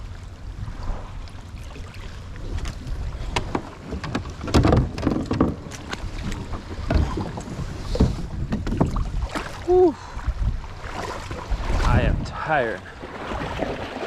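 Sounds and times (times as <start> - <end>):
wind on microphone: 0.0 - 14.0
gear knocking against kayak hull: 3.3 - 9.1.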